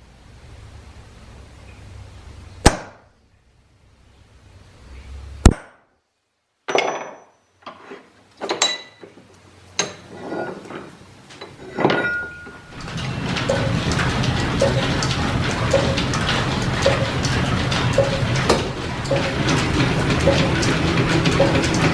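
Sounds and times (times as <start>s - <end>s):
shop machinery ticking: 12.7s - 21.9s.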